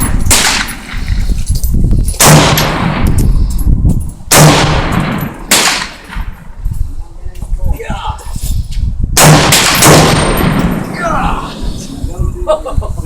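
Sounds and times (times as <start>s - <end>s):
gunshots with echo: 0.0s - 1.0s, 2.2s - 3.2s, 4.3s - 6.4s, 9.2s - 10.9s.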